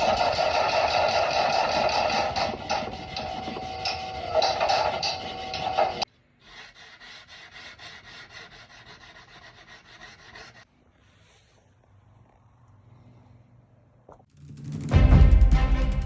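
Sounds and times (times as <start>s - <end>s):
filing a knife blade: 0.0s - 10.7s.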